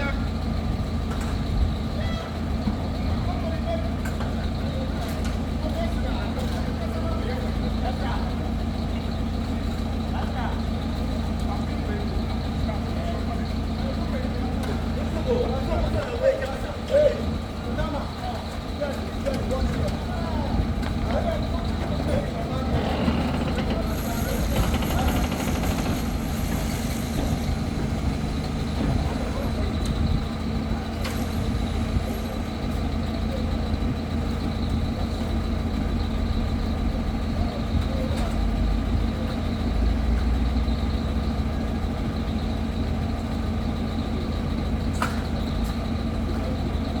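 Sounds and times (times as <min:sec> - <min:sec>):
engine running steadily: 0:00.0 - 0:47.0
background voices: 0:11.2 - 0:34.5
fast rattle of ticks: 0:22.9 - 0:28.0.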